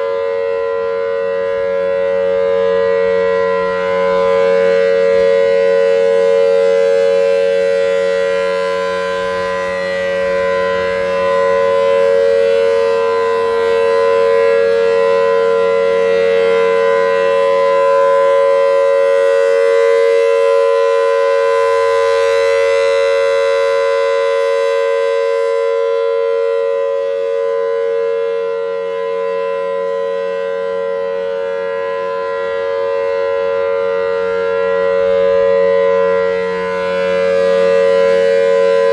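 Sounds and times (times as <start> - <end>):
civil defense siren two-note tone: 0.0 - 38.9.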